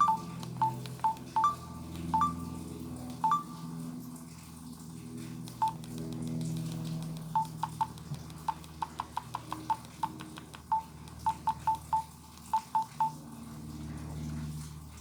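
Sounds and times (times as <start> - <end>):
phone keypad beeps: 0.0 - 2.6, 3.2 - 3.6, 7.4 - 7.9, 8.5 - 13.2
low steady hum: 0.0 - 15.0.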